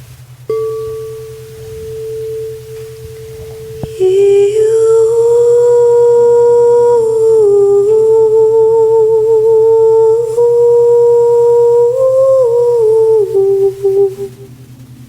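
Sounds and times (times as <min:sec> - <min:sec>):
person humming long notes: 0:00.5 - 0:14.5
steady low drone: 0:00.5 - 0:15.0.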